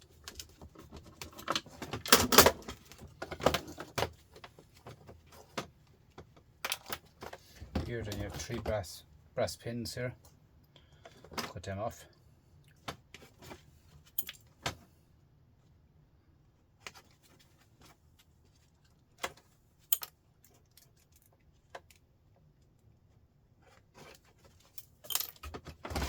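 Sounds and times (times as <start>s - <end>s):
metal tool clicks and clinks: 14.2s - 14.4s, 19.9s - 20.1s, 24.8s - 25.4s.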